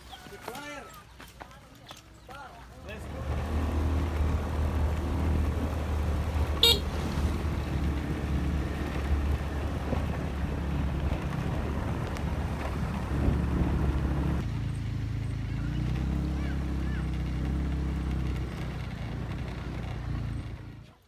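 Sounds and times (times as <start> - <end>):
vehicle engine humming: 2.7 - 21.0
horn toot: 6.4 - 7.2.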